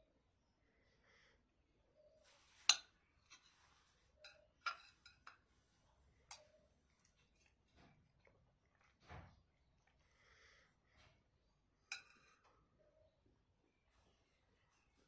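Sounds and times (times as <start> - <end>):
cutlery scraping plate: 2.5 - 5.5, 11.9 - 12.6
cutlery clinking on plate: 2.6 - 3.6, 4.2 - 5.5, 11.8 - 12.6.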